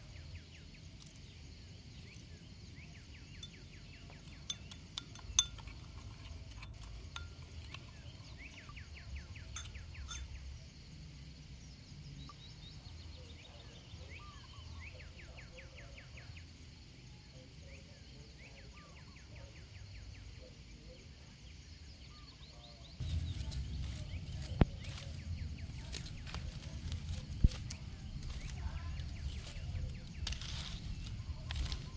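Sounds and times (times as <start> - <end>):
small birds chirping: 0.0 - 16.7, 17.5 - 31.9
outdoor background noise: 0.0 - 31.9.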